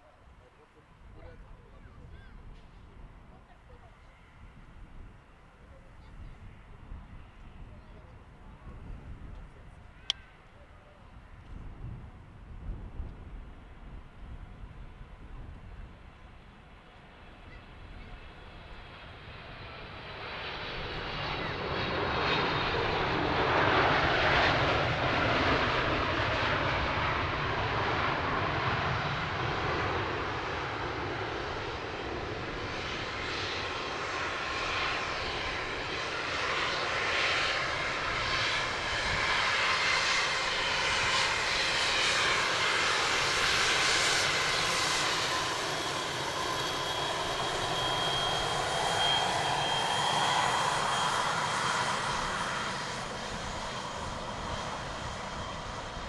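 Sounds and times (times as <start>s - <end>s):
jet engines whining: 18.6s - 56.0s.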